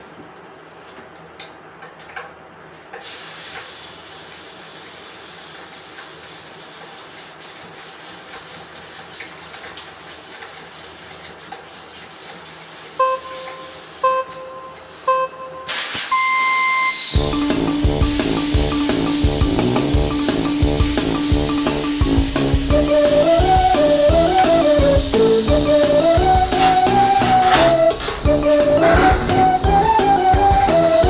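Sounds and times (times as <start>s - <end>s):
steady hiss: 3.0s - 31.0s
short countdown beeps: 13.0s - 24.2s
long high-pitched start beep: 13.0s - 31.0s.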